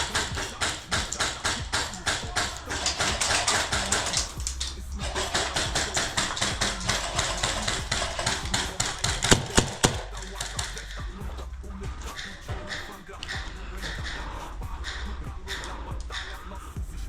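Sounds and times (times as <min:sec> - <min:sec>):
sharp cracks: 0:00.0 - 0:11.2
music with fast beat: 0:00.0 - 0:17.0.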